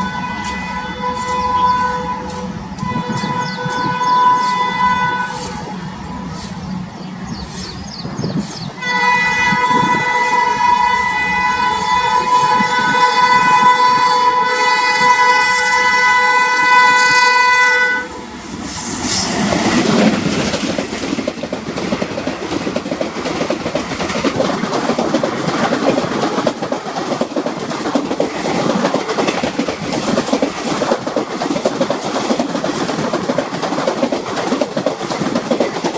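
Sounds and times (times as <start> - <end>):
train horn blast: 0.0 - 7.6, 8.8 - 18.3
train wheels clattering over rails: 0.0 - 13.8, 18.4 - 35.9.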